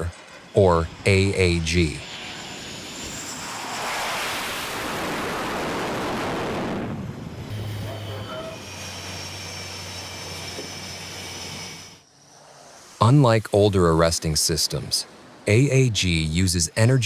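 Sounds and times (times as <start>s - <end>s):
jet aircraft rushing: 0.0s - 9.7s.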